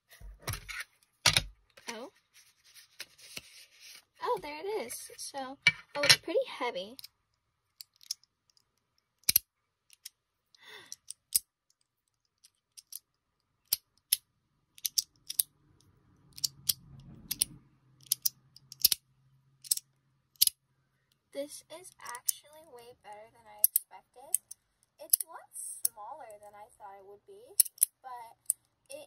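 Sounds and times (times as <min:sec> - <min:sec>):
magnetic fidget toy clicking: 0:21.9 - 0:26.6, 0:27.6 - 0:29.0.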